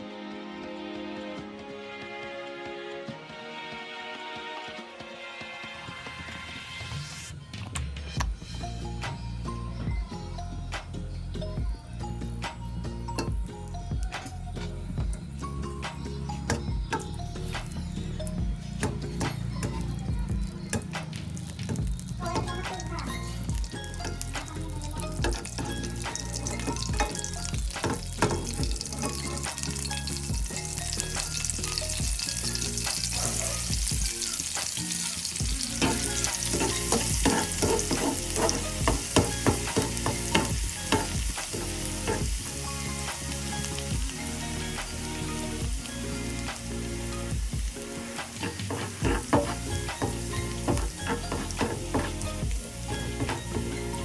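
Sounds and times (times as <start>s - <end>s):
food sizzling in hot oil: 13.0s - 54.0s
spatula scraping a pan: 35.3s - 42.3s, 48.2s - 54.0s.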